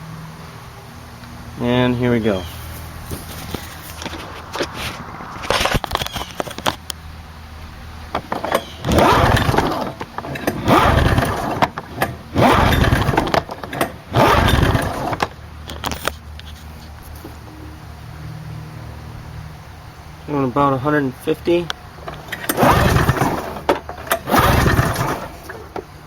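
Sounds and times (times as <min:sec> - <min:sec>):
snowmobile engine cranking: 0:08.1 - 0:17.2, 0:21.5 - 0:26.0.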